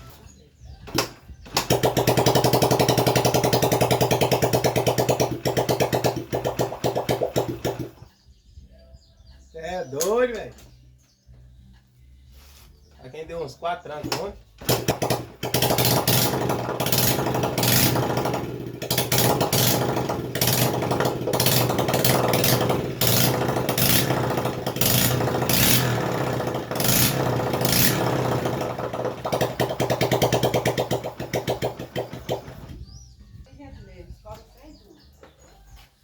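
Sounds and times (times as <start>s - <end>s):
motorcycle engine surging: 0.9s - 8.3s, 14.0s - 33.1s.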